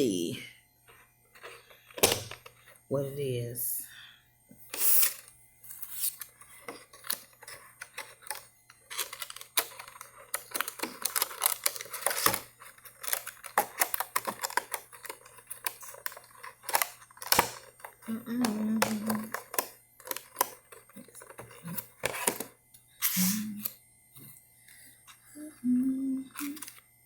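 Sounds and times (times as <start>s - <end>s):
packaging clicks and rustles: 5.1s - 23.2s, 26.3s - 26.9s.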